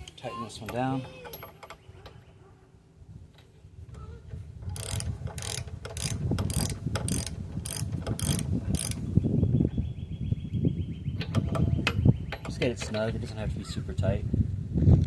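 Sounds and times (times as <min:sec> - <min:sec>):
low rumbling handling noise: 0:00.0 - 0:15.0
ratchet pawl clicking: 0:04.7 - 0:09.0.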